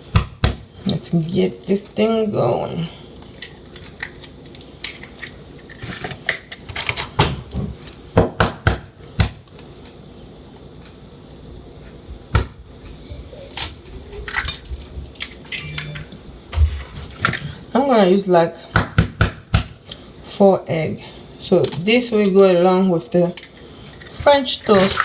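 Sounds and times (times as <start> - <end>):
eggs cracking against bowl: 3.2 - 6.7.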